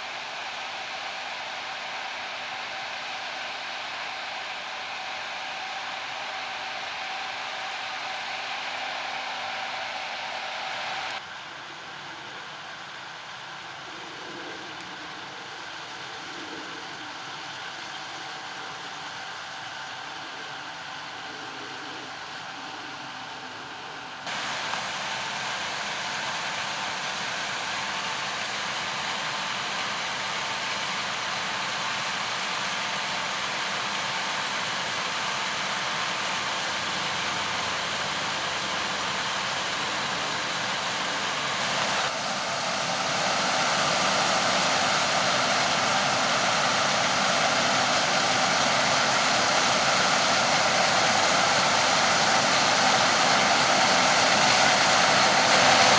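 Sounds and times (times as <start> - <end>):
farm machinery running: 0.0 - 11.2, 24.1 - 55.9.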